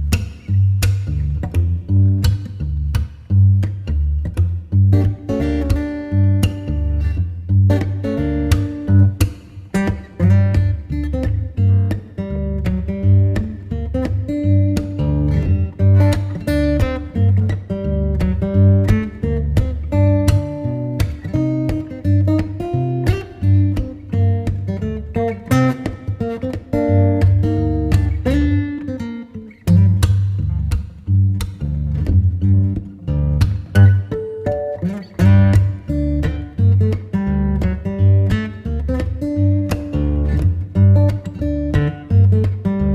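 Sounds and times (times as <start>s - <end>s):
bass line: 0.0s - 9.3s, 10.2s - 28.9s, 29.7s - 34.2s
acoustic guitar music: 0.0s - 42.9s
steady bass line: 10.2s - 26.1s.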